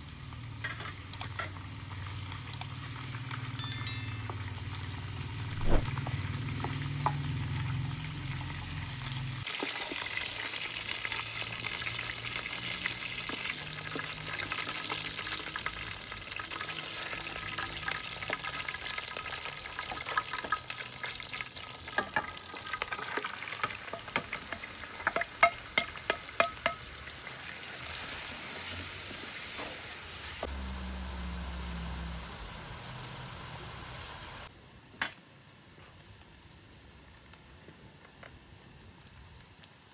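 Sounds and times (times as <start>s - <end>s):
food sizzling in a pan: 6.4s - 34.6s.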